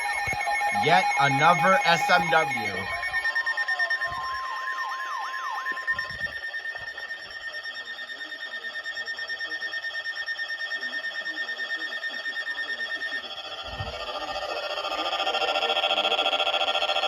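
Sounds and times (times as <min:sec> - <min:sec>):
rapidly pulsing alert tone: 0:00.0 - 0:03.9
steady warning alarm tone: 0:00.0 - 0:17.0.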